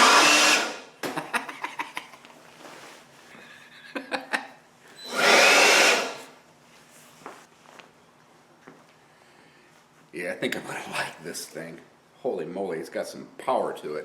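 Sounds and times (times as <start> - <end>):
cordless blower rushing air: 0.0 - 0.9, 5.1 - 6.3.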